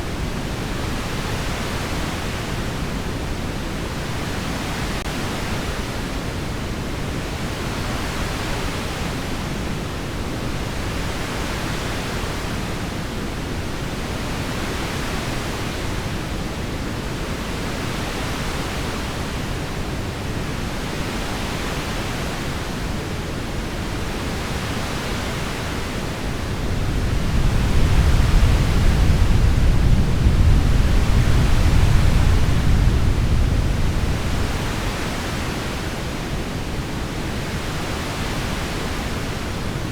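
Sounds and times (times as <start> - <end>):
low rumble of thunder: 26.8 - 34.9.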